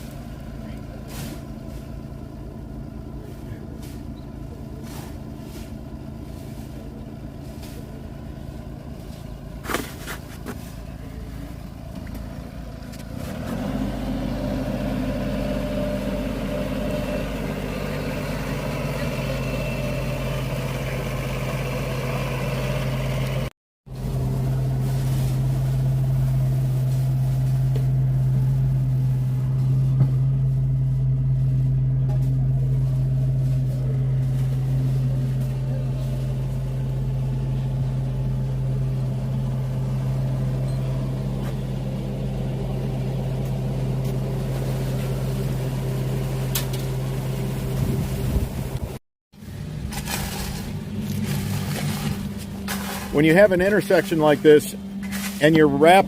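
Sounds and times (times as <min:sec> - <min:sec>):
engine humming steadily: 0:00.0 - 0:56.0.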